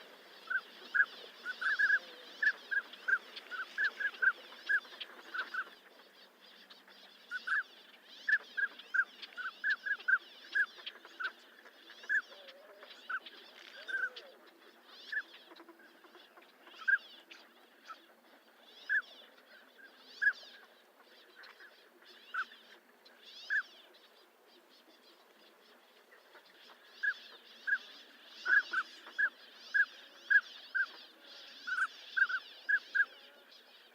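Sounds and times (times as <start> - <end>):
ducks whistling calls: 0.0 - 6.1, 6.8 - 18.1, 18.7 - 19.5, 23.3 - 23.9, 26.3 - 33.4
faint steady hiss: 0.0 - 33.9.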